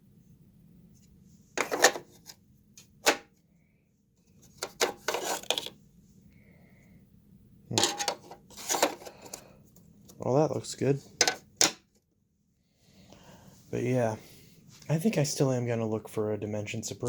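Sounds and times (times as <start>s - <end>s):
faint steady hum: 0.0s - 17.0s
hard objects knocking and clicking: 11.2s - 11.8s.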